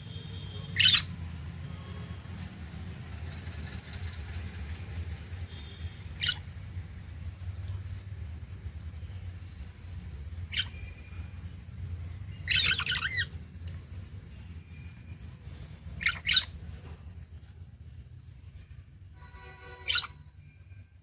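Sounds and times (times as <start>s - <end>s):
budgerigars chirping and chattering: 0.6s - 1.2s, 5.5s - 7.8s, 8.6s - 17.0s, 19.8s - 20.1s.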